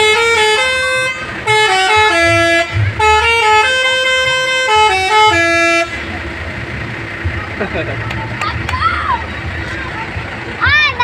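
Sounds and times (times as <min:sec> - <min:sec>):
bus horn playing a tune: 0:00.0 - 0:06.4
low rumble: 0:01.4 - 0:03.7, 0:05.6 - 0:11.0.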